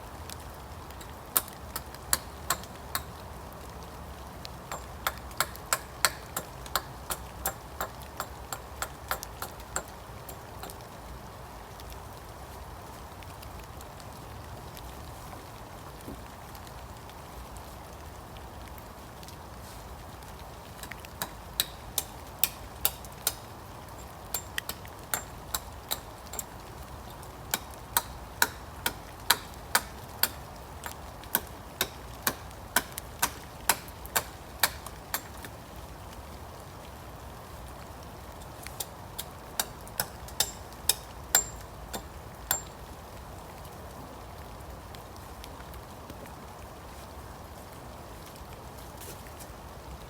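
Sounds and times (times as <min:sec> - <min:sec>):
rain hissing: 0:00.0 - 0:50.0
hammer driving nails into timber: 0:04.7 - 0:09.9, 0:27.6 - 0:30.4, 0:31.3 - 0:35.4.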